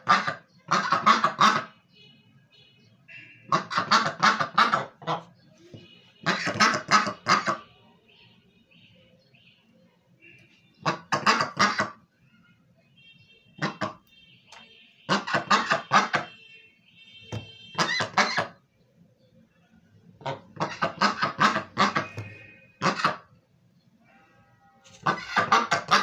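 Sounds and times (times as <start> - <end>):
duck quacking: 0.0 - 1.7, 3.5 - 5.3, 6.2 - 7.7, 10.8 - 12.0, 13.6 - 14.0, 15.1 - 16.3, 17.7 - 18.6, 20.2 - 23.3, 25.0 - 26.0.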